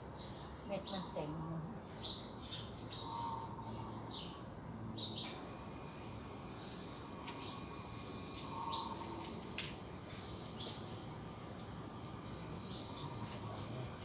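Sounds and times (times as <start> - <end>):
birds chirping: 0.0 - 14.0
faint outdoor background: 0.0 - 14.0
lower bird call: 6.9 - 9.4.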